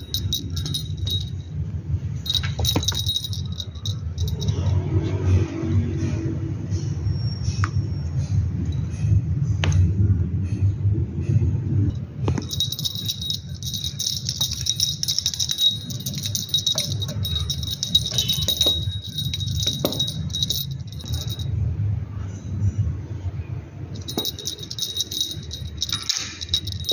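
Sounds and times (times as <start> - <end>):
small bell jingling: 0.0 - 5.1, 12.0 - 21.6, 23.9 - 26.9.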